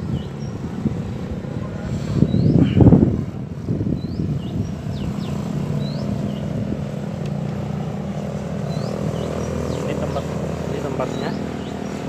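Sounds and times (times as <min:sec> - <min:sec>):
bird chirping: 0:00.0 - 0:00.7, 0:02.2 - 0:03.0, 0:03.9 - 0:06.6, 0:08.2 - 0:12.0
low engine hum: 0:00.0 - 0:12.0.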